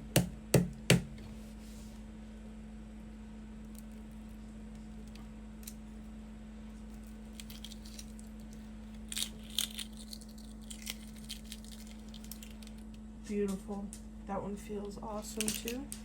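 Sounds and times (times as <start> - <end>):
steady low hum: 0.0 - 16.0
egg shells cracking and peeling: 6.8 - 13.1, 15.3 - 16.0.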